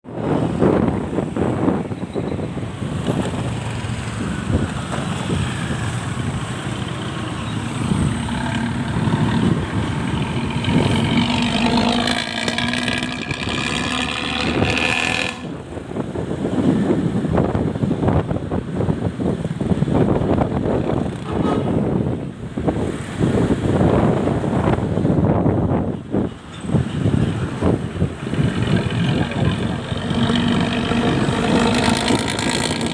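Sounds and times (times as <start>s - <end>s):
vehicle engine growling: 0.1s - 17.8s, 26.7s - 32.9s.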